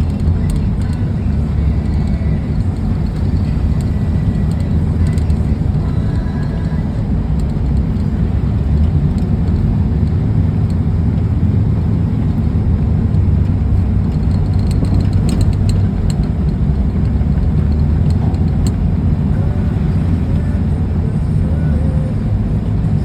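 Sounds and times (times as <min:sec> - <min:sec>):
faint ticks: 0:00.0 - 0:10.8
vehicle engine and tyres rumbling: 0:00.0 - 0:23.0.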